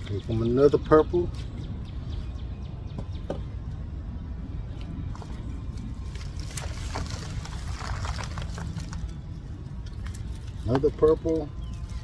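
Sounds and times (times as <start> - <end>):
hands digging in soil: 5.1 - 9.4.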